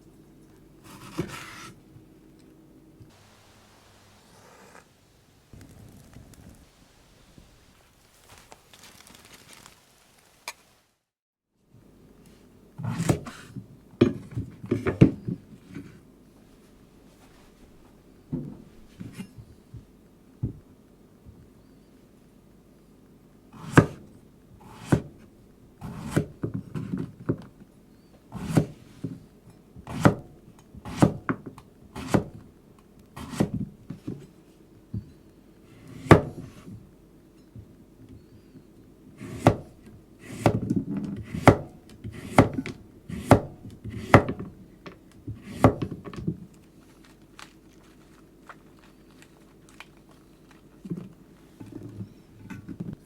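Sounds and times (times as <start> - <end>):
chopping strokes on wood: 23.6 - 24.0, 24.6 - 25.2, 29.8 - 31.4, 32.0 - 32.4, 33.2 - 33.6, 39.2 - 44.5, 45.3 - 45.9.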